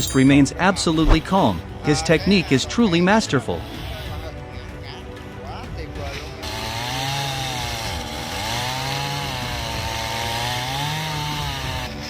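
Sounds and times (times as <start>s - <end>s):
chainsaw cutting wood: 6.4s - 12.0s.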